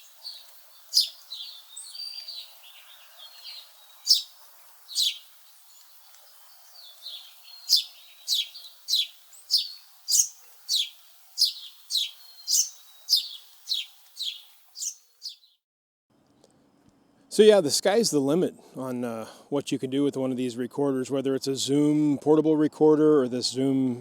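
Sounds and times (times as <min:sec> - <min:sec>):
faint steady hiss: 0:00.0 - 0:15.3
songbird chirping: 0:00.0 - 0:15.6.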